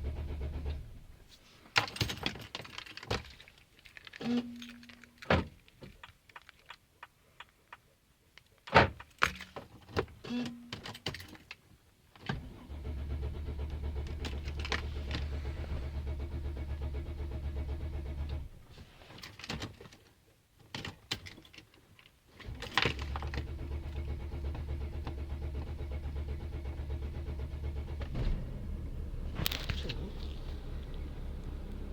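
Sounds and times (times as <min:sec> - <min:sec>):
starter motor cranking engine: 0:00.0 - 0:01.1, 0:12.4 - 0:18.6, 0:22.4 - 0:31.9.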